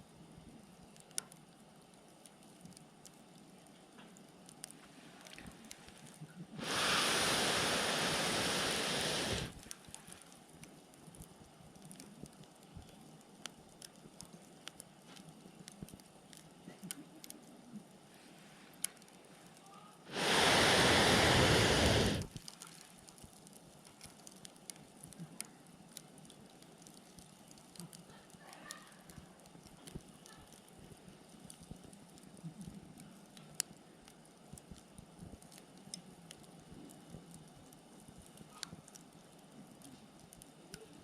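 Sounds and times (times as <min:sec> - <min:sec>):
wood fire crackling: 0:00.0 - 0:41.0
fire popping: 0:00.4 - 0:41.0
loud rushing hiss: 0:06.6 - 0:09.6, 0:20.1 - 0:22.3.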